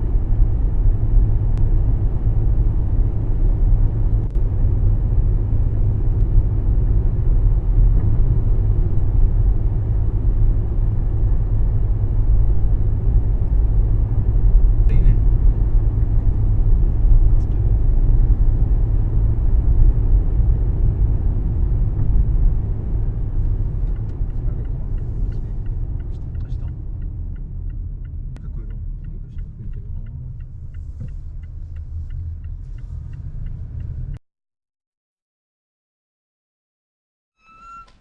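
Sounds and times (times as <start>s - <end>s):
car engine and road noise: 0.0s - 34.2s.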